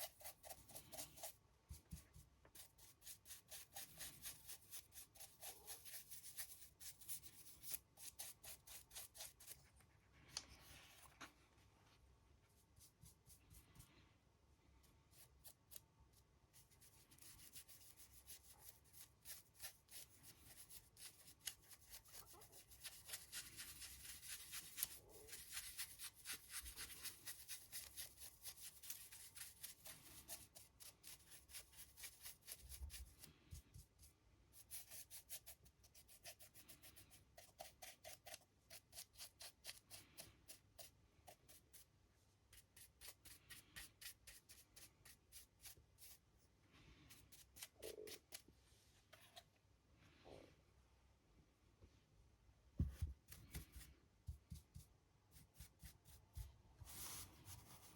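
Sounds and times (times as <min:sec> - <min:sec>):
paintbrush bristles scrubbing: 0:00.0 - 0:09.8, 0:16.6 - 0:33.8, 0:55.6 - 0:57.9.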